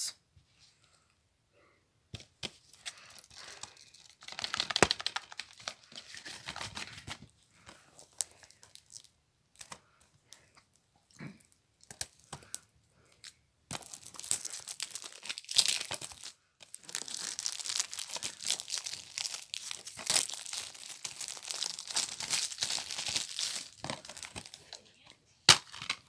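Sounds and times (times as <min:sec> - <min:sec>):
plastic wrap crinkling: 0:02.9 - 0:07.3, 0:13.8 - 0:26.0.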